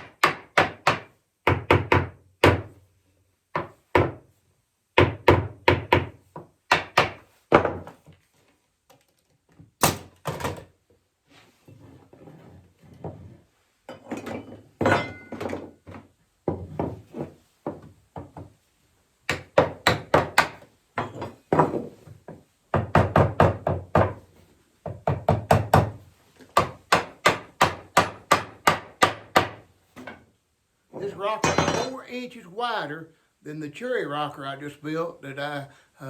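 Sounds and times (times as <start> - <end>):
hammer striking wood: 0.0 - 2.7, 3.5 - 4.2, 5.0 - 7.9, 19.3 - 24.2, 24.8 - 30.1.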